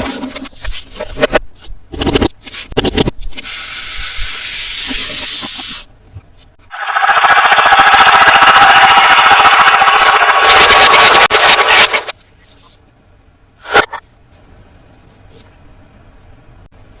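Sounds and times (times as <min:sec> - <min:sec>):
loud fast buzzing rattle: 0:06.7 - 0:12.1.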